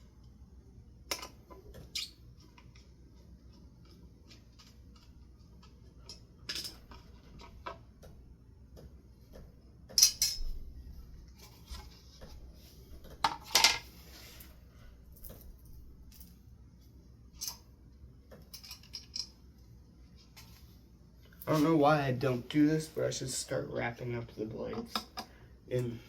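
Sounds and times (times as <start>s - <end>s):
metal parts clinking: 6.0s - 7.0s, 9.9s - 10.6s, 18.5s - 19.4s.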